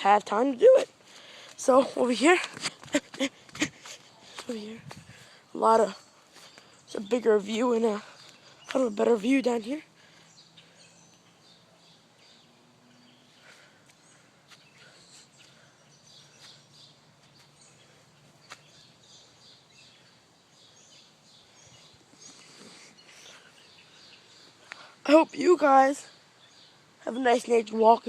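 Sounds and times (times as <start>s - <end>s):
faint bird chirps: 5.4s - 27.4s.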